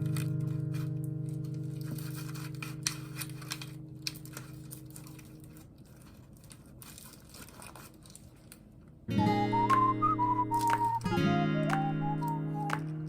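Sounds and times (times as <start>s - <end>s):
crinkling and rustling: 0.0s - 9.1s, 9.8s - 11.1s
background music: 9.1s - 13.0s.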